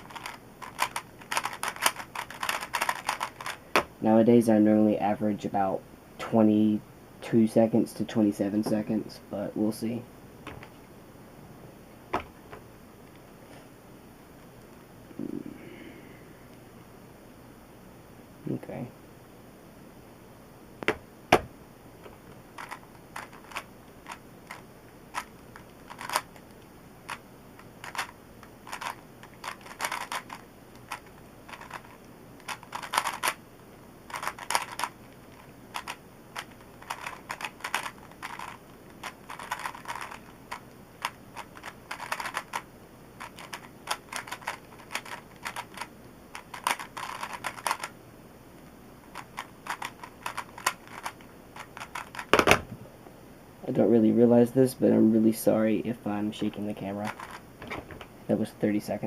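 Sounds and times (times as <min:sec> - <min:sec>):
puzzle cube plastic clicking: 0:00.0 - 0:03.9, 0:22.6 - 0:33.4, 0:34.1 - 0:42.6, 0:43.2 - 0:47.9, 0:49.1 - 0:52.6.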